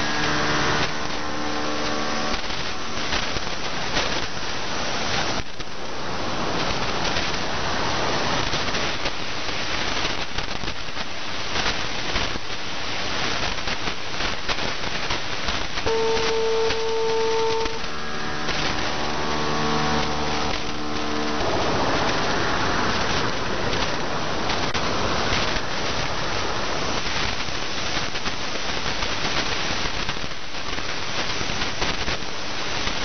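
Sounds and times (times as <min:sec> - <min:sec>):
steady radio tones: 0:00.0 - 0:05.8, 0:15.5 - 0:27.8
radio static hiss: 0:00.0 - 0:33.0.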